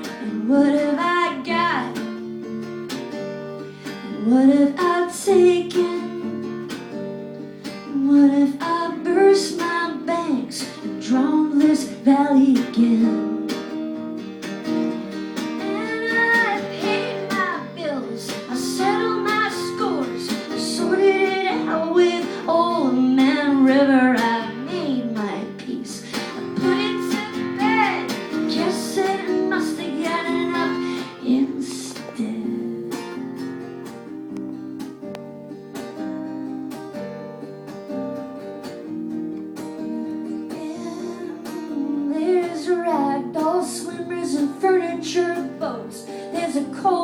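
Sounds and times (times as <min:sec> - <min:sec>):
woman singing: 0:00.0 - 0:02.4, 0:03.8 - 0:06.8, 0:07.8 - 0:13.7, 0:15.4 - 0:33.2, 0:40.1 - 0:47.0
acoustic guitar: 0:00.0 - 0:47.0.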